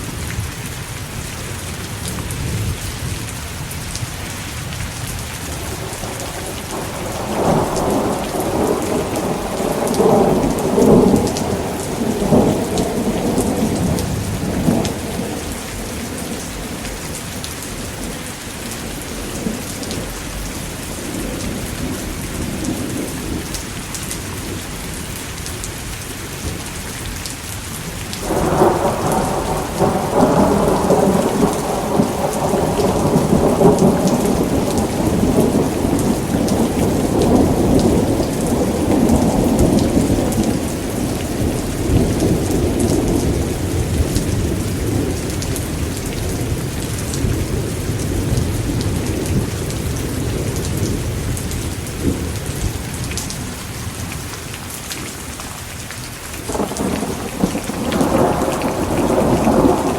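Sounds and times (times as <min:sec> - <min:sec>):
heavy rain: 0:00.0 - 0:59.9
rolling thunder: 0:05.5 - 0:20.2, 0:28.2 - 0:54.1, 0:56.5 - 0:59.9.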